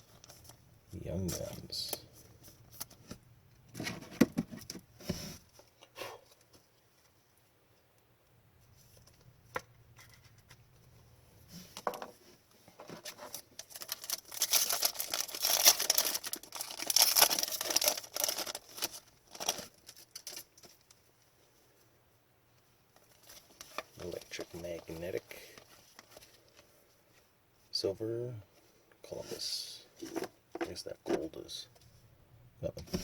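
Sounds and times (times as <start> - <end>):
foil wrapper rustling and crinkling: 13.0 - 21.0.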